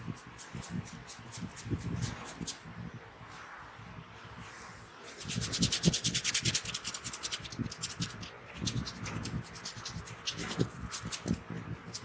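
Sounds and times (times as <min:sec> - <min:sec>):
fingers scratching through hair: 0:00.0 - 0:02.6, 0:05.1 - 0:12.0.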